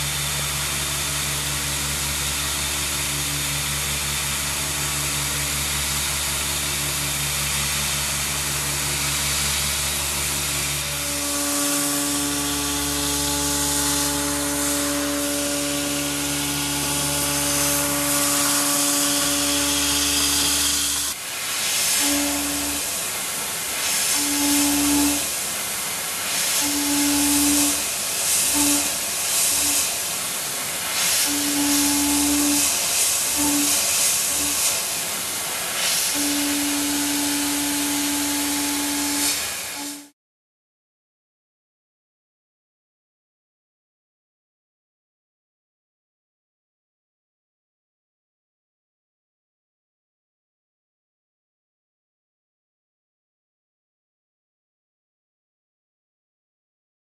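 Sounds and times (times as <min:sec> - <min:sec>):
milling machine cutting metal: 0:00.0 - 0:40.0.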